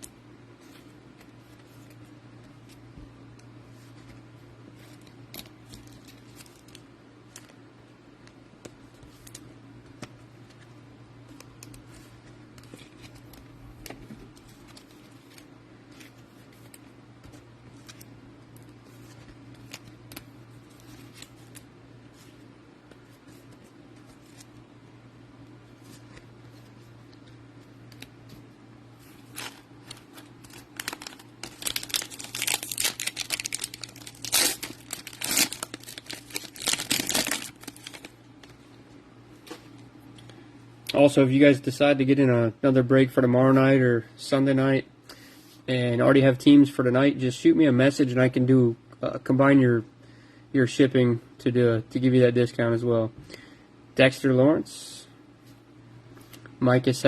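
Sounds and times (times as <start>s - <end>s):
card pack wrapper tearing: 29.3s - 38.1s
cards and packaging clicking: 29.3s - 38.5s.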